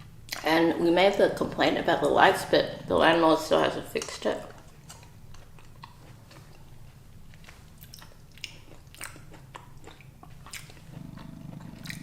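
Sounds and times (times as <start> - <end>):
faint low hum: 0.0 - 12.0
person chewing food: 4.5 - 12.0.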